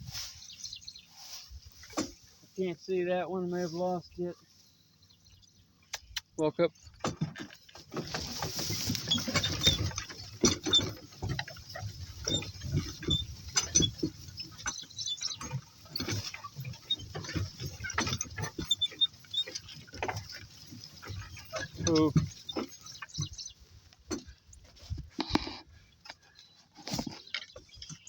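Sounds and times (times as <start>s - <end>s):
footsteps rustling in grass: 0.0s - 5.0s, 8.0s - 10.2s.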